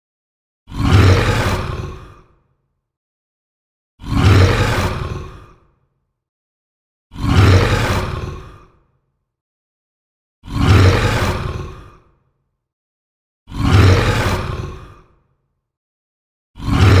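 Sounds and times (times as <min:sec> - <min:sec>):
harsh creature roar: 0:00.7 - 0:02.4, 0:04.0 - 0:05.7, 0:07.1 - 0:08.8, 0:10.4 - 0:12.1, 0:13.5 - 0:15.2, 0:16.6 - 0:17.0.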